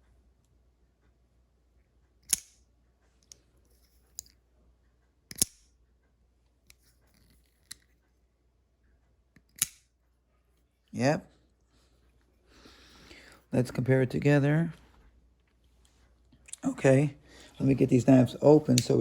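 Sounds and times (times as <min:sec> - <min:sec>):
blade locking clicks: 0:02.2 - 0:02.6, 0:05.3 - 0:05.7, 0:09.4 - 0:09.9
knife blade snapping open: 0:05.3 - 0:05.6.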